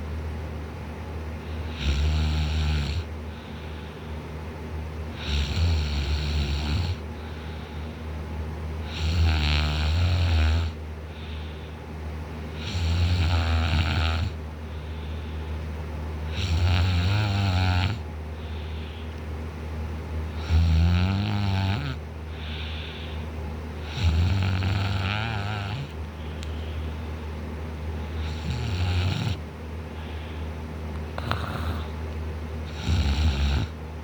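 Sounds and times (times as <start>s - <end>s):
man snoring loudly: 1.7s - 3.1s, 5.1s - 7.0s, 8.8s - 10.8s, 12.6s - 14.4s, 16.3s - 18.0s, 20.3s - 22.0s, 23.8s - 25.9s, 28.2s - 29.4s, 31.2s - 31.9s, 32.7s - 33.8s
quiet breaths: 3.2s - 4.3s, 5.1s - 8.2s, 11.0s - 12.0s, 14.6s - 15.7s, 18.3s - 19.3s, 22.2s - 27.4s, 28.0s - 32.0s.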